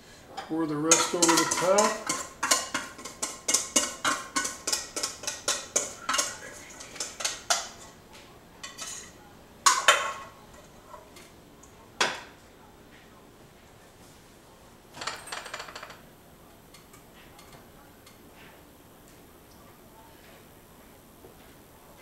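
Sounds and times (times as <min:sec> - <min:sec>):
utensil clinking against mixing bowl: 0:00.4 - 0:08.0.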